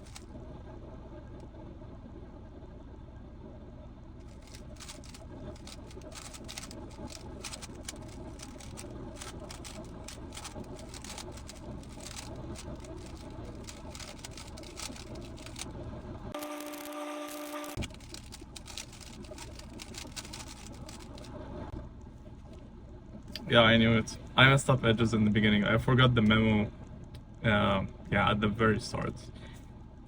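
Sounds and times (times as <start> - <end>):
puzzle cube layers clicking: 0.0 - 0.2, 4.3 - 15.7, 16.4 - 21.3
short electronic tone: 16.4 - 17.8.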